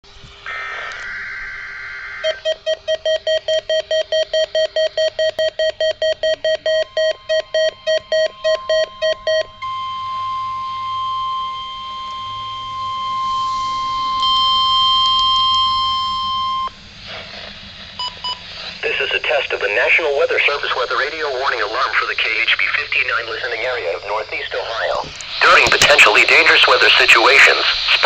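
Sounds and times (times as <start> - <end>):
digital header tones: 0.5 - 10.6, 18.0 - 28.0
steady warning alarm tone: 0.5 - 16.9, 18.0 - 28.0
rapid electronic alert beeping: 2.2 - 9.5, 25.4 - 27.5.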